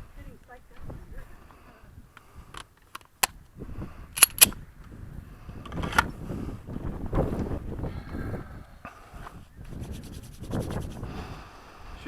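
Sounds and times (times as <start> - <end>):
pistol metallic clicks: 4.2 - 4.6.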